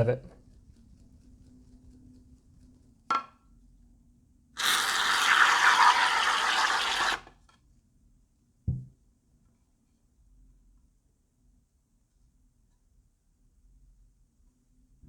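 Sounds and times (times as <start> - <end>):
aerosol foam spraying: 4.6 - 7.3.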